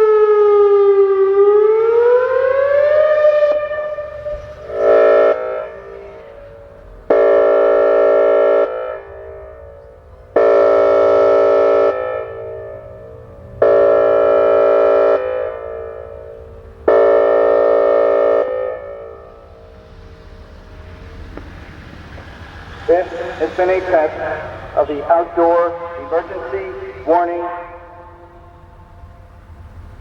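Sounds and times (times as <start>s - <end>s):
siren echo: 0.0s - 29.8s
warning siren blasts: 0.0s - 30.0s.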